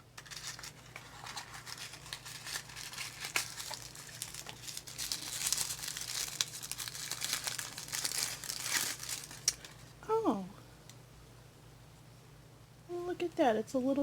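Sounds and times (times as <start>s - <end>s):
packaging crinkling by hand: 0.1s - 10.0s.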